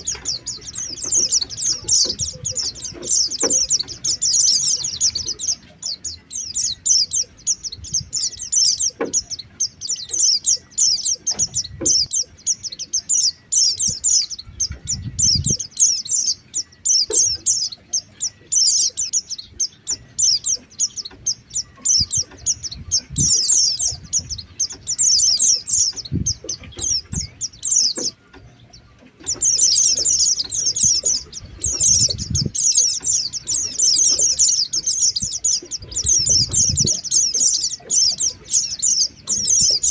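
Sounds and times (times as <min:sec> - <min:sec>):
high chattering bird chirps: 0:00.0 - 0:39.9
low thumps: 0:21.2 - 0:28.5.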